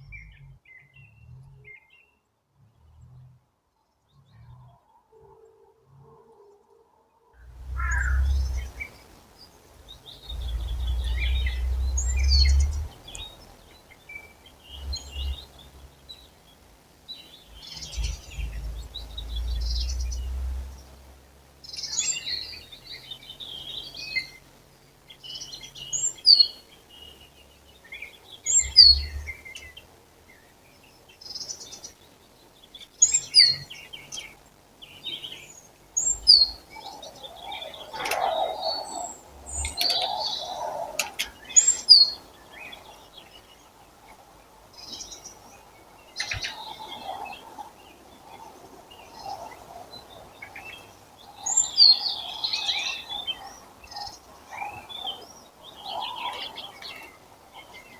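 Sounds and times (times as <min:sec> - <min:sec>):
low rumble: 0:00.0 - 0:00.6, 0:07.4 - 0:24.0
songbirds singing: 0:00.0 - 0:57.9.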